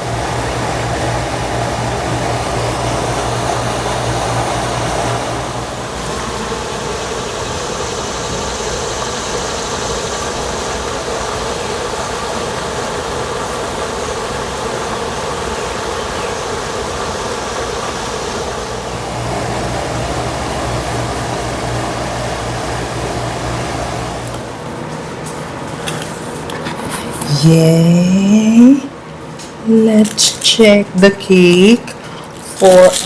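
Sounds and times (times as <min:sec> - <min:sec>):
engine humming: 0:00.0 - 0:10.0, 0:15.8 - 0:25.7.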